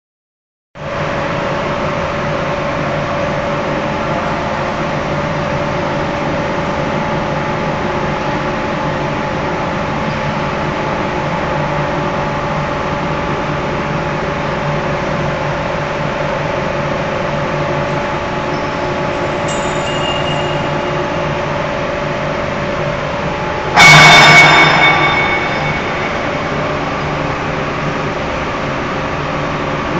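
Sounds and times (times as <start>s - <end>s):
machine humming: 1.1s - 29.9s
sudden loud noise: 23.8s - 27.8s.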